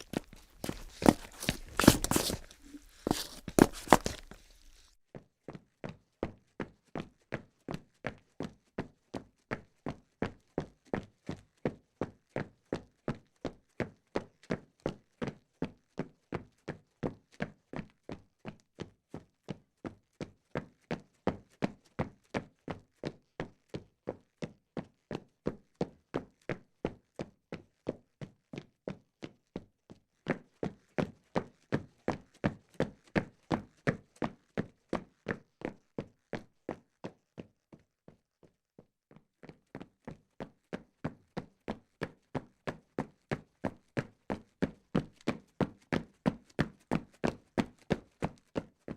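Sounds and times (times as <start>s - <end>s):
footsteps walking: 0.0s - 4.9s.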